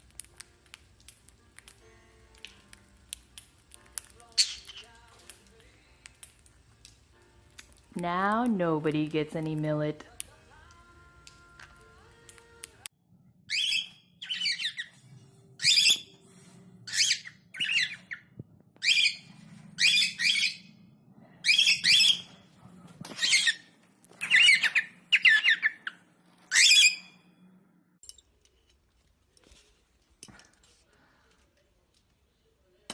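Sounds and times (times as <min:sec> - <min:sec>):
bird squawking: 0:18.8 - 0:20.7.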